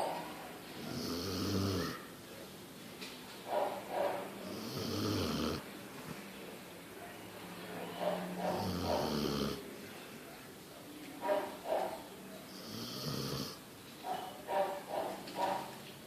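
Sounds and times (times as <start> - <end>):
dog snoring: 0.8 - 2.1, 4.4 - 5.6, 8.0 - 9.6, 12.5 - 13.6.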